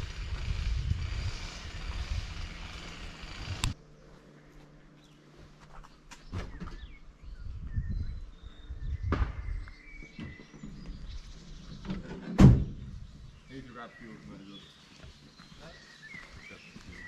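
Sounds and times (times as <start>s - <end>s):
low rumbling: 0.0s - 3.8s
small birds chirping: 3.6s - 17.0s.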